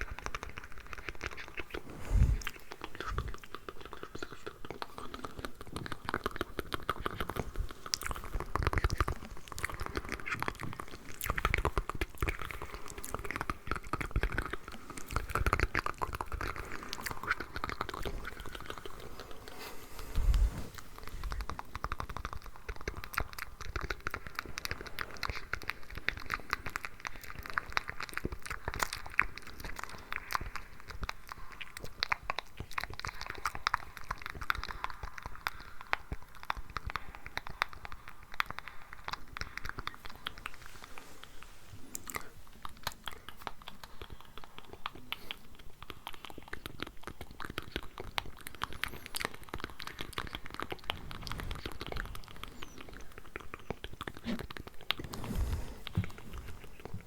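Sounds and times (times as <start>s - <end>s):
wet mouth clicks and smacks: 2.5s - 18.9s.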